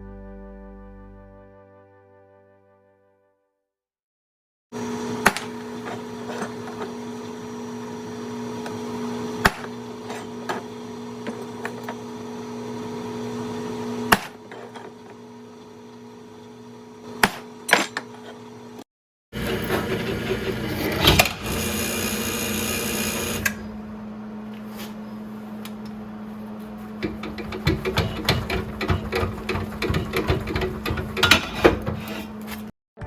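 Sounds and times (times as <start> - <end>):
metal knocks and clanks: 27.0 - 32.2.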